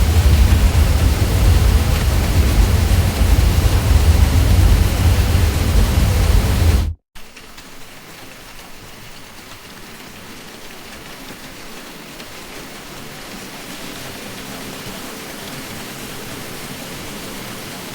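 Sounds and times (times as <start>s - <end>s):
ceiling fan drone: 0.0s - 7.0s.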